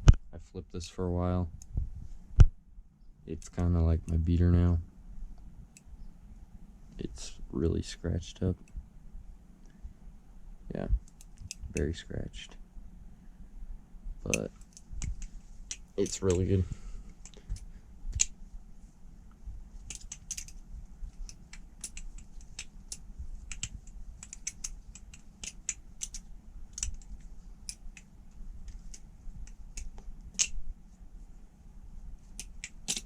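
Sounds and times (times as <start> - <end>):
metal knife handles clicking: 14.3 - 16.5, 19.9 - 20.6, 21.2 - 28.1, 32.4 - 33.0.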